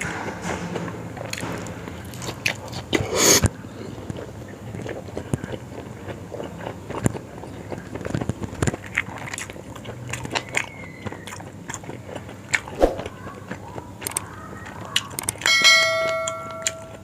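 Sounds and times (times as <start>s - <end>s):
person chewing food: 1.2s - 15.5s.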